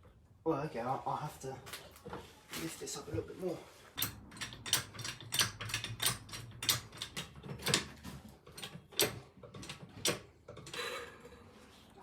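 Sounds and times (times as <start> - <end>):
jack metallic clicks and clunks: 4.0 - 10.8.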